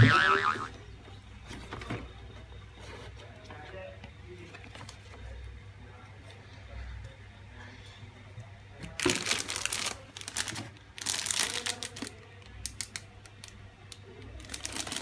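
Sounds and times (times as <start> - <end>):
packaging crinkling and rustling: 8.9 - 13.5, 14.4 - 15.0.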